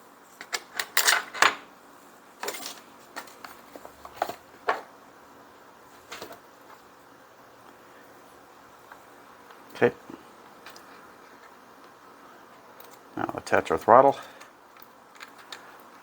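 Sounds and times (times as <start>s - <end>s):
small parts and tools clicking: 14.4s - 16.0s.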